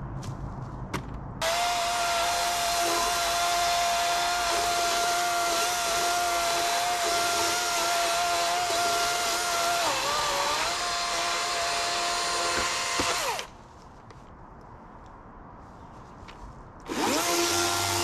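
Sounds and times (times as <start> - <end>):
chainsaw running at high speed: 1.4 - 13.5, 16.9 - 18.0.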